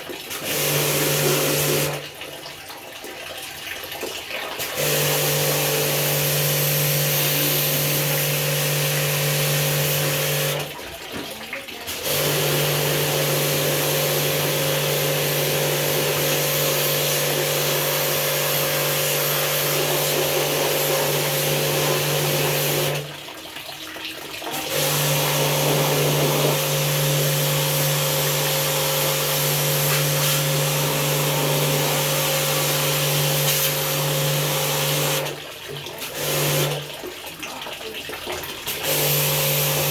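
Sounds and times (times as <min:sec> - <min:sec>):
water pump humming: 0:00.0 - 0:39.9
hissing water jet: 0:04.5 - 0:10.8, 0:11.5 - 0:23.1, 0:24.5 - 0:36.9, 0:38.6 - 0:39.9.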